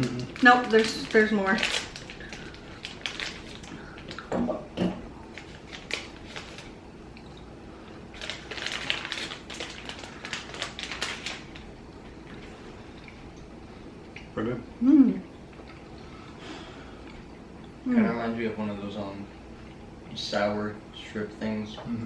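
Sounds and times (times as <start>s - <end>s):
plastic packaging crinkling: 0.0s - 4.3s, 5.3s - 6.8s, 7.9s - 12.6s.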